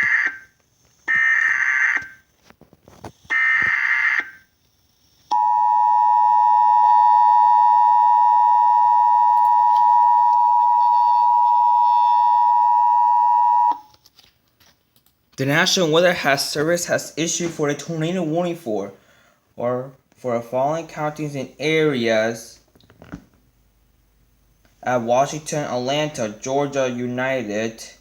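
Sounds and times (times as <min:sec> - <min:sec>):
two-tone alert signal: 0:05.3 - 0:13.8.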